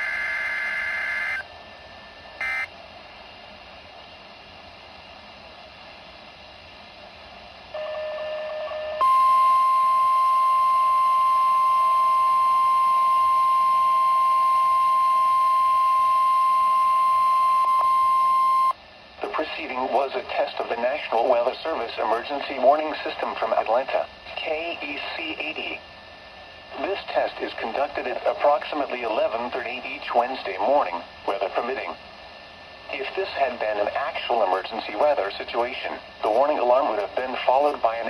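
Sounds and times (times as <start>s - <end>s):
screeching digital data tones: 0.0s - 1.5s, 2.4s - 2.7s
steady high warning alarm tone: 0.0s - 2.8s, 7.7s - 18.8s
static hiss: 0.0s - 7.7s, 19.0s - 38.0s
brief lower tone: 7.8s - 18.8s.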